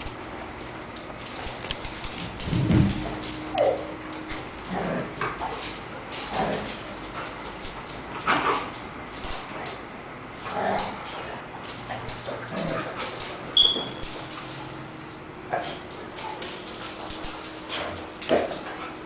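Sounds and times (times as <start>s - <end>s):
paws clicking and scraping: 0.0s - 9.9s, 10.5s - 19.0s
sharp high squeak: 13.6s - 14.0s.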